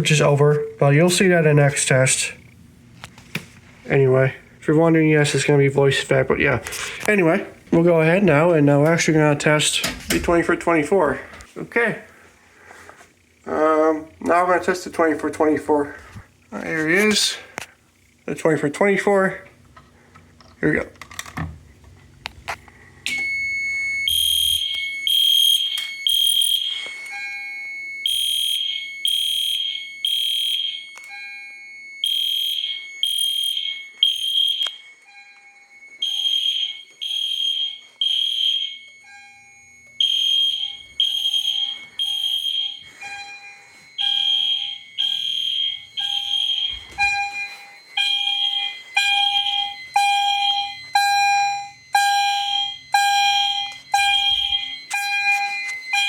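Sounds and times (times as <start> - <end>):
fire alarm horn blasts: 23.0 - 56.0
soft low beeping: 31.0 - 56.0
steady high tone: 31.0 - 56.0.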